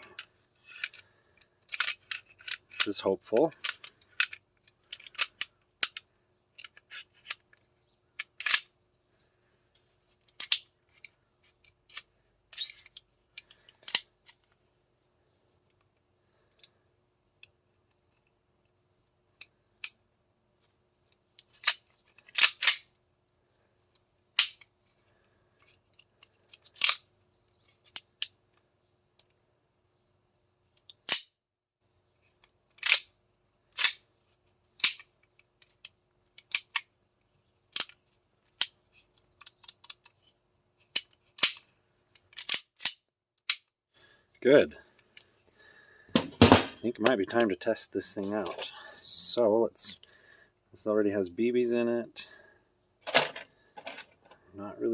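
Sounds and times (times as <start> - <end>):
pistol parts clicking: 0.1 - 7.6, 8.2 - 8.7, 10.2 - 14.6, 19.4 - 20.0, 21.4 - 22.9, 23.9 - 24.7, 25.6 - 29.4, 30.8 - 31.3, 32.4 - 34.1, 34.8 - 37.0, 37.7 - 40.2, 40.8 - 43.7.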